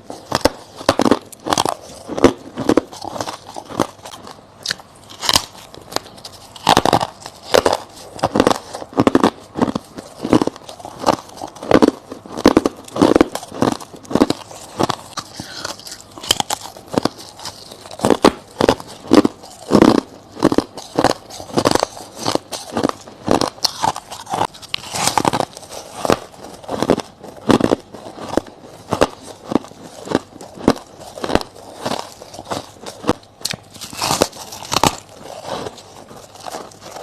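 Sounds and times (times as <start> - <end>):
chewing crushed ice crunches: 0.0 - 37.0.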